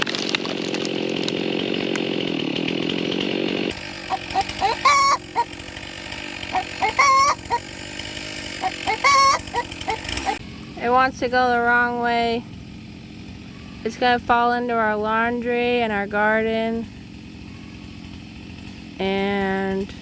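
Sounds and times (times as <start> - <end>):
chainsaw cutting wood: 0.0 - 10.5, 12.5 - 13.5, 16.8 - 20.0
chickens squawking: 3.8 - 10.4.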